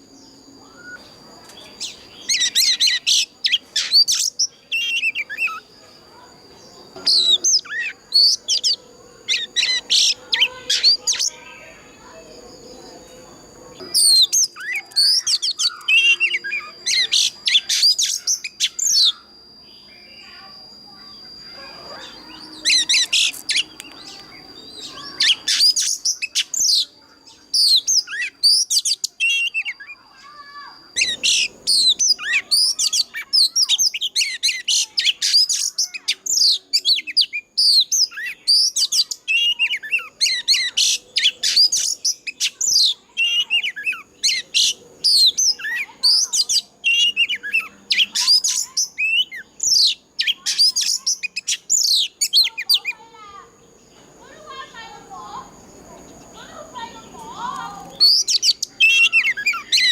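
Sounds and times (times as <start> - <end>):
bird singing whistles and chatter: 0.0 - 59.9
steady high tone: 4.6 - 26.1.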